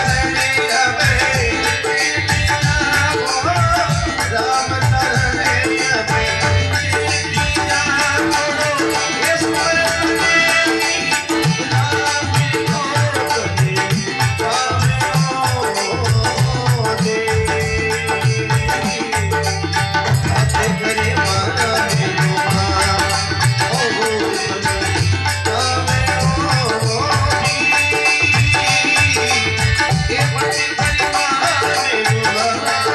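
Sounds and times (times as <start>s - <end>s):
hand drum rhythm: 0.0s - 32.9s
rattling percussion: 0.0s - 32.9s
sustained instrumental melody: 0.0s - 32.9s.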